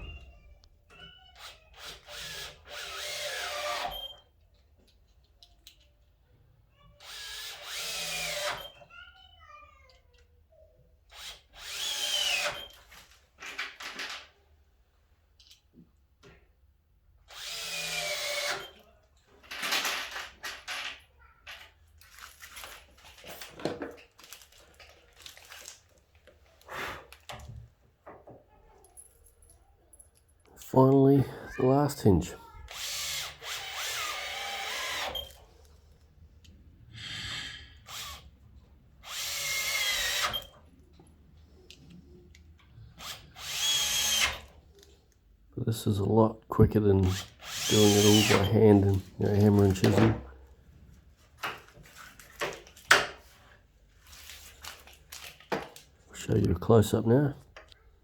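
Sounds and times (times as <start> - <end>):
drill-driver motor whine: 1.8 - 4.2, 7.0 - 8.8, 11.1 - 12.7, 17.3 - 18.8, 32.7 - 35.4, 37.0 - 38.2, 39.0 - 40.6, 43.0 - 44.5, 47.1 - 48.6.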